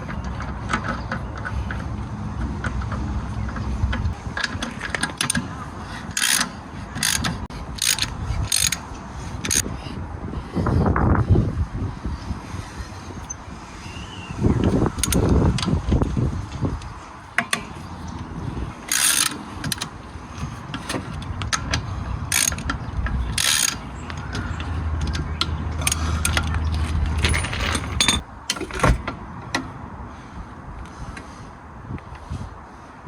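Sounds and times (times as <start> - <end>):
metal tools clinking: 6.2 - 8.8, 22.3 - 29.0
socket ratchet clicking: 6.2 - 8.9, 14.8 - 15.4, 18.9 - 20.0, 22.3 - 24.4.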